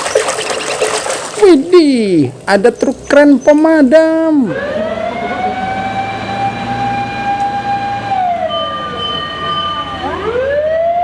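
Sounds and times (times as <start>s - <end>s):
fire engine wail siren: 4.3s - 11.0s.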